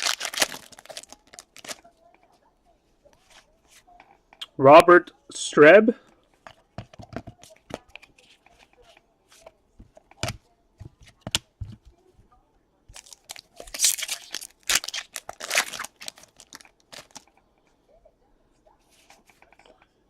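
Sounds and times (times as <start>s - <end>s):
card pack wrapper tearing: 0.0s - 1.8s, 13.0s - 17.3s.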